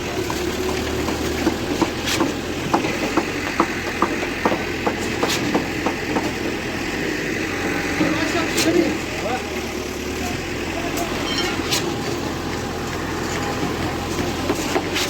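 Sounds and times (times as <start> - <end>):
pump engine running: 0.0 - 15.0
irregular knocks and clicks: 0.2 - 6.6.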